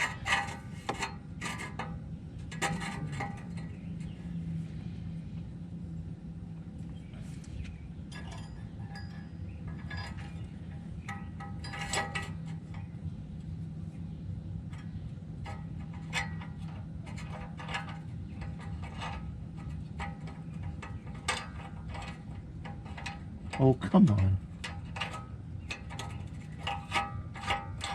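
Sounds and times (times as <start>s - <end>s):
metal tools clinking on exhaust pipe: 8.1s - 12.9s, 14.7s - 27.9s.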